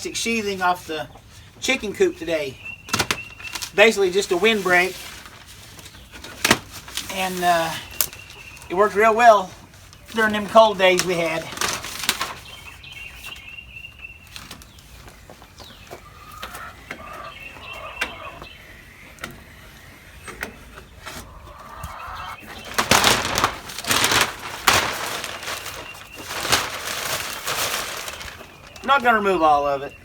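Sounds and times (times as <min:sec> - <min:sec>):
plastic sheeting crackling: 0:10.1 - 0:12.6, 0:22.4 - 0:29.4
hens clucking softly: 0:15.8 - 0:22.6.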